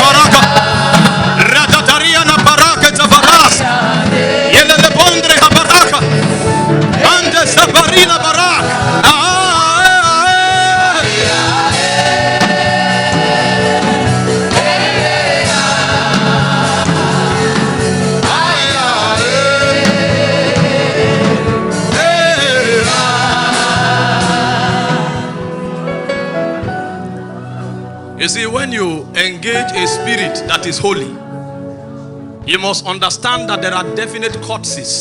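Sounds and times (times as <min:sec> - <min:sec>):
voices singing held notes: 0:00.0 - 0:25.8
instrumental backing: 0:00.0 - 0:35.0.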